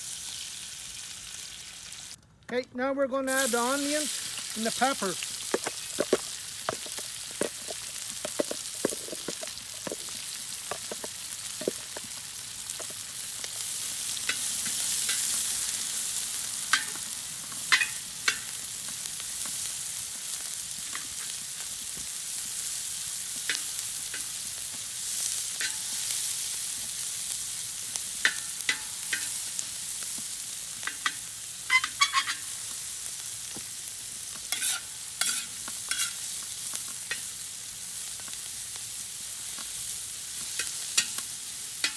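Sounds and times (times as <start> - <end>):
vegetables sizzling in a pan: 0.0 - 2.2, 3.3 - 41.9
utensil scraping a pan: 3.4 - 13.2, 30.9 - 32.5, 34.5 - 36.2.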